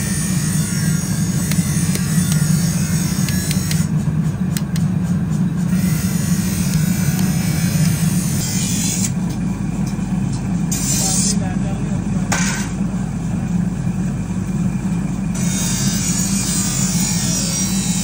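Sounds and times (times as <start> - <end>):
low mechanical rumble: 0.0 - 18.0.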